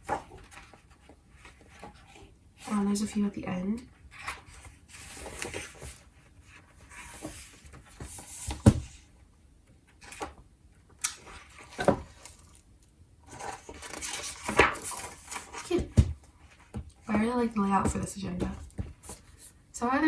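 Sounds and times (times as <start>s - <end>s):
paper pages rustling: 4.2s - 9.0s, 13.3s - 19.5s.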